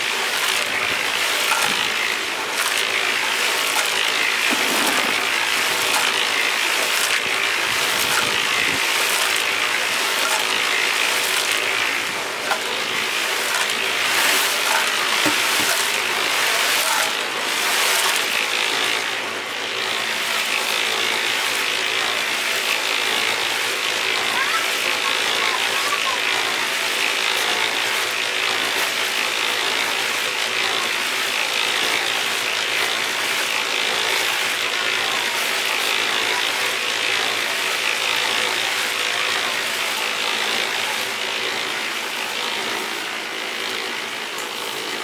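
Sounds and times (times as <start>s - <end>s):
motor hum: 0.0s - 22.2s
concrete mixer drum churning: 0.0s - 45.0s.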